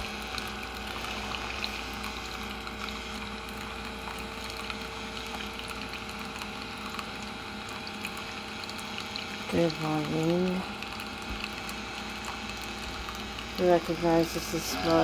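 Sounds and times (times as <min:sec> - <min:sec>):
coffee maker pump humming: 0:00.0 - 0:15.0
water running: 0:00.0 - 0:15.0.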